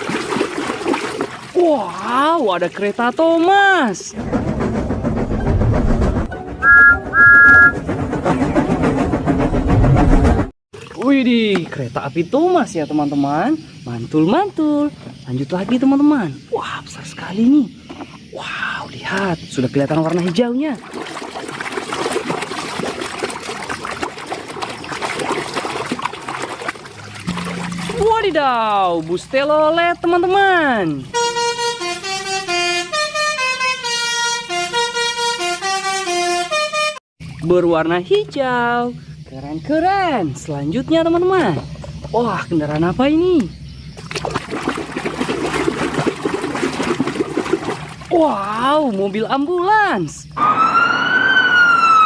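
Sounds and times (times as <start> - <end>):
water trickling and splashing: 0.0 - 4.2, 10.7 - 31.3, 37.2 - 38.7, 39.6 - 50.2
rushing rattling noise: 4.1 - 10.5
two-note train whistle: 6.5 - 7.8.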